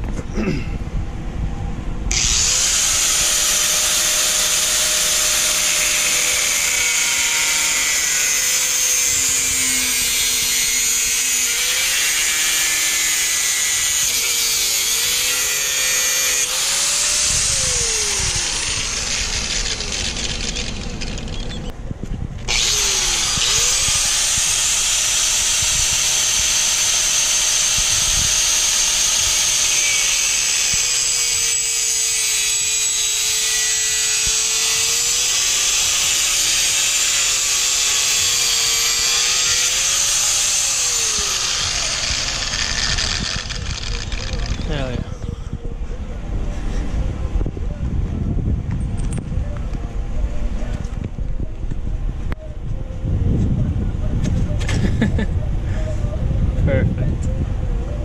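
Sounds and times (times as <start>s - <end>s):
angle grinder cutting metal: 2.1s - 21.7s, 22.5s - 45.0s.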